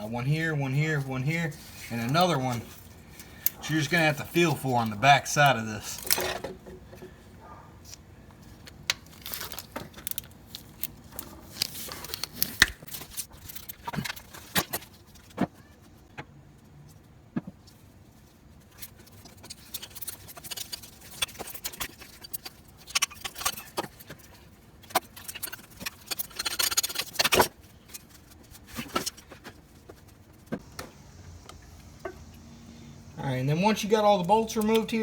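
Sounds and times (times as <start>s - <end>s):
hand tools clicking on metal: 33.6s - 35.0s.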